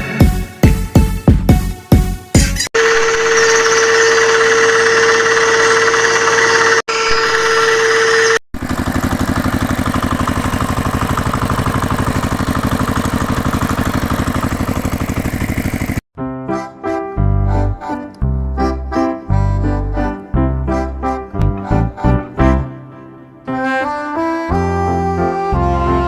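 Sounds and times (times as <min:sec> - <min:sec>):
fast pulsing machine sound: 0:02.8 - 0:16.0
small electric motor whining: 0:02.8 - 0:16.0.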